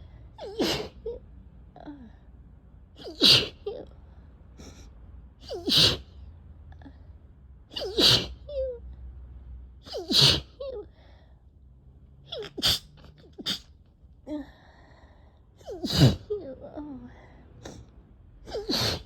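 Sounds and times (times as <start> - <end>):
person sneezing: 3.0 - 3.6, 5.4 - 6.1, 7.8 - 8.5, 9.9 - 10.6, 12.4 - 13.7, 15.6 - 16.4, 18.5 - 19.0
sniffing: 4.6 - 6.1, 12.4 - 13.8, 18.5 - 19.0.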